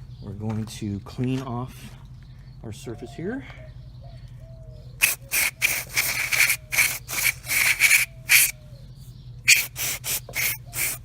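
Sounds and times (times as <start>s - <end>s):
scrubbing strokes on metal: 5.0s - 8.5s, 9.5s - 11.0s.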